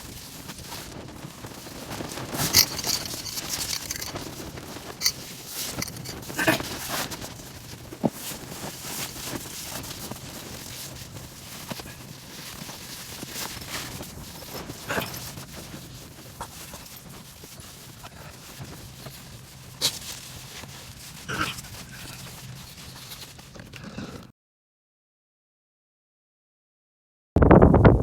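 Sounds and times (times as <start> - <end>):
handling and rustling: 1.7 - 7.7, 8.3 - 23.8.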